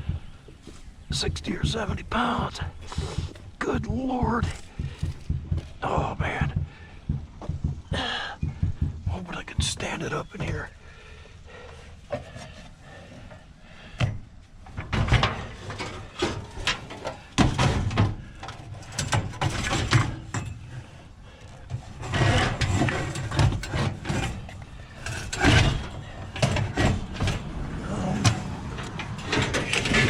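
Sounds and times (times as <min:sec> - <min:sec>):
heavy object knocking and scraping: 0:00.0 - 0:10.8.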